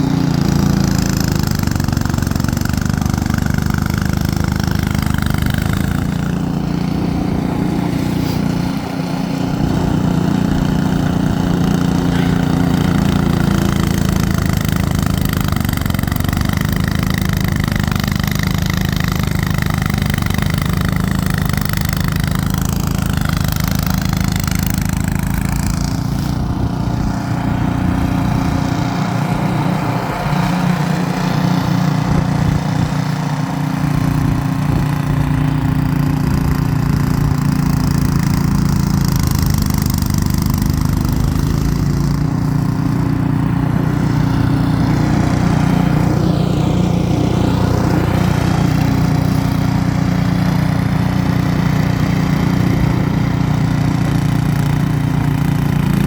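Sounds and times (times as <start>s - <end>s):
snowblower engine running: 0.0s - 56.0s.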